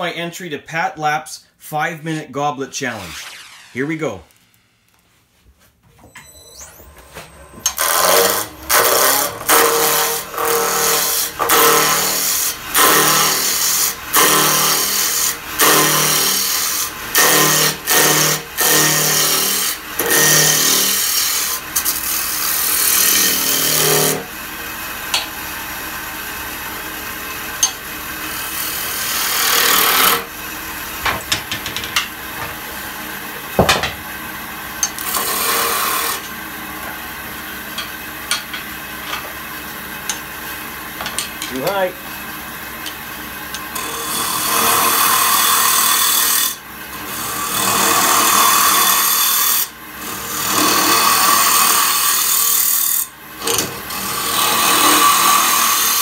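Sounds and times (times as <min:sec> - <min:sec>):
wood lathe spinning: 0:02.8 - 0:05.0, 0:06.4 - 0:56.0
gouge cutting wood: 0:07.6 - 0:24.3, 0:27.5 - 0:30.3, 0:34.9 - 0:36.4, 0:43.8 - 0:56.0.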